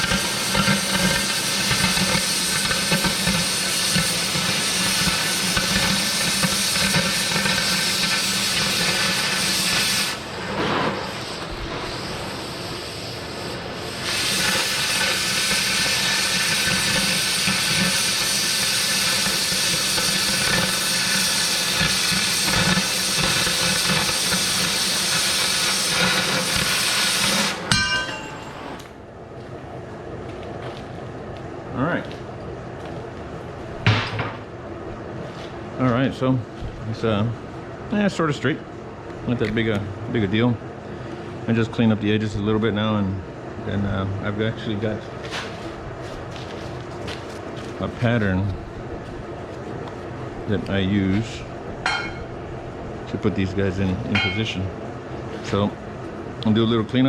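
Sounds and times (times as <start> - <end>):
cutting torch hissing: 0.0 - 28.8.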